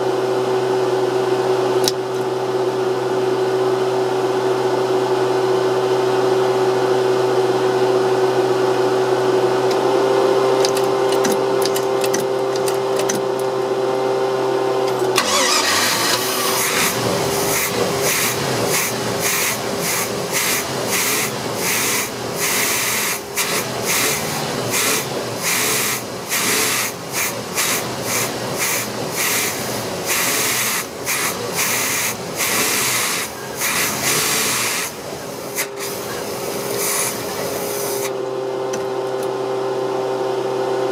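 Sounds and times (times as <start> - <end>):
irregular hissing and rubbing: 36.8 - 38.0.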